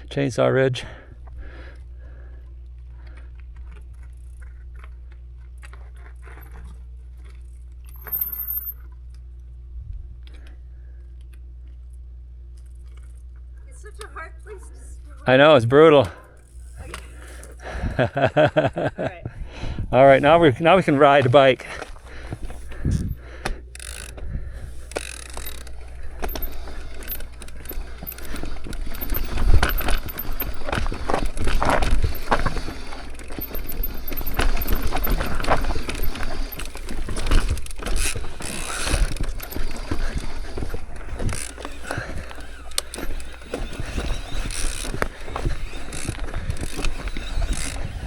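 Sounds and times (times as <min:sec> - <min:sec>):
bicycle freewheel ratcheting: 0:07.9 - 0:08.8, 0:16.4 - 0:17.7, 0:20.1 - 0:48.0
bike chain rattling over rocks: 0:07.9 - 0:08.8, 0:16.0 - 0:18.0, 0:20.0 - 0:48.0.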